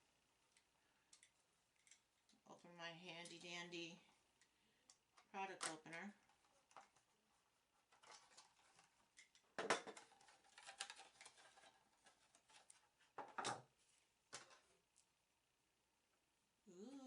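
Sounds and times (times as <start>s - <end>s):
packaging snips and crinkles: 10.0s - 12.8s.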